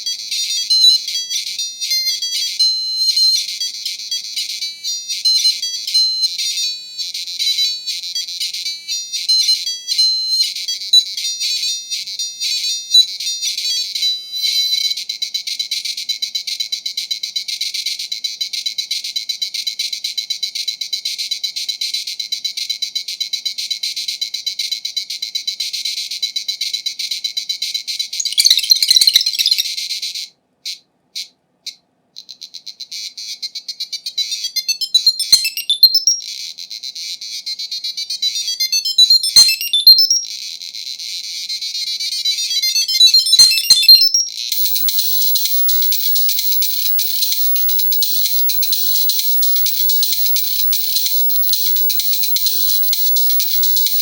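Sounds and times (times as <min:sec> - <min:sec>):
beeping chiptune music: 0:28.2 - 0:29.6, 0:34.7 - 0:36.2, 0:38.7 - 0:40.3, 0:42.6 - 0:54.0.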